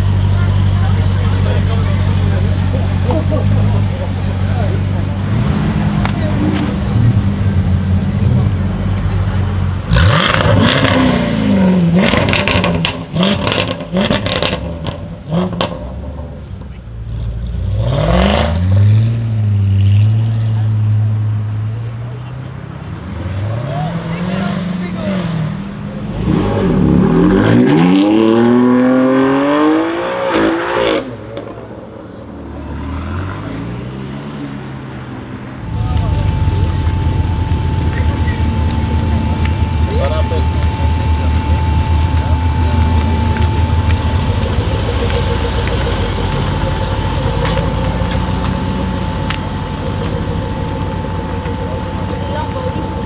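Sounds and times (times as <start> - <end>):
exhaust crackles and pops: 0.0 - 17.3, 35.6 - 53.0
engine rev blips: 0.0 - 20.1, 23.0 - 31.3, 35.6 - 53.0
car engine revs falling: 0.0 - 20.8, 22.6 - 31.6, 35.6 - 53.0.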